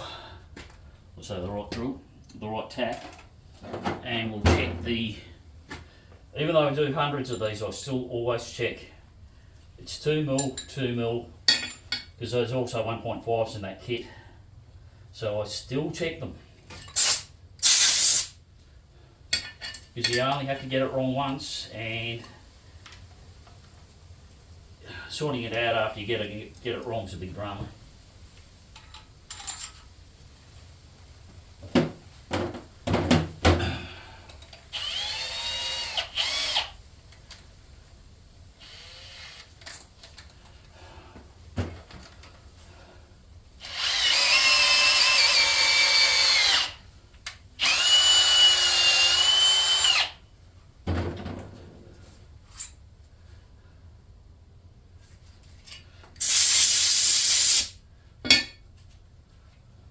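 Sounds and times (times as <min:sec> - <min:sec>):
power drill motor whine: 0:34.7 - 0:36.7, 0:38.6 - 0:39.5, 0:43.6 - 0:46.8, 0:47.6 - 0:50.2.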